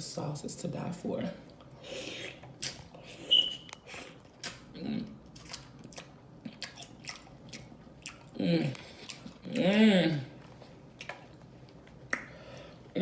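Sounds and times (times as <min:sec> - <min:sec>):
wet chewing and lip-smacking: 0:01.5 - 0:09.8, 0:10.4 - 0:12.4.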